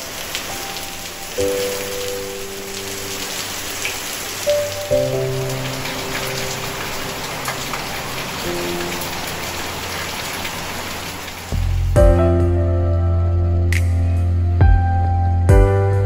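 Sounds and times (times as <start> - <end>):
soft music: 0.0 - 10.5, 11.5 - 16.0
rain hiss: 0.0 - 12.0.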